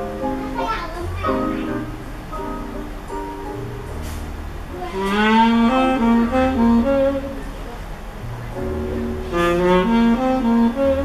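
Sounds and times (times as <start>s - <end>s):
jazz over loudspeakers: 3.9s - 11.0s.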